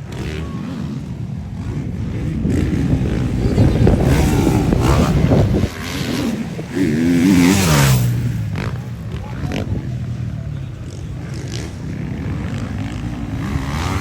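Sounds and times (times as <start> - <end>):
motorcycle engine revving: 0.0 - 14.0.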